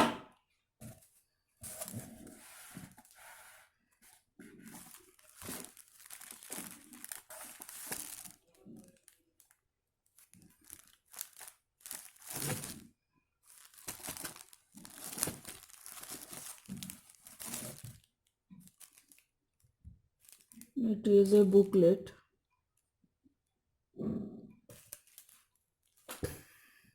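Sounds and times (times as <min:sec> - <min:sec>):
packaging crinkling and rustling: 0:01.6 - 0:03.3, 0:04.0 - 0:19.3, 0:20.2 - 0:20.8, 0:24.7 - 0:26.3.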